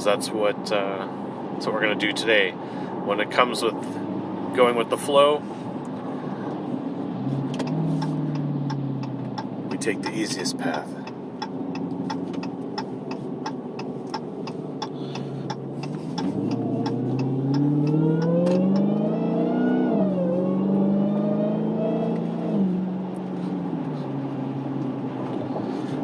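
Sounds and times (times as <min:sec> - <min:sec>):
car engine accelerating: 0:05.8 - 0:26.0
turn signal ticking: 0:05.8 - 0:26.0.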